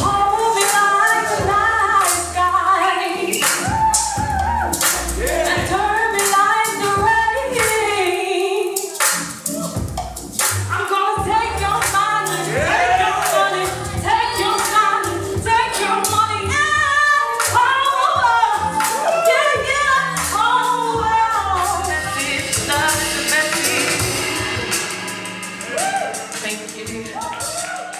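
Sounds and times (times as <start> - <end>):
backing track with bass and beat: 0.0 - 27.9
person singing: 10.9 - 19.5, 20.7 - 27.9.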